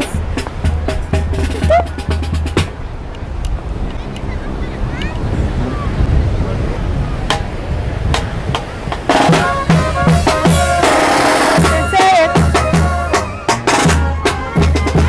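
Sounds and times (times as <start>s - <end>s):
live band music: 0.0s - 2.8s, 8.9s - 15.0s.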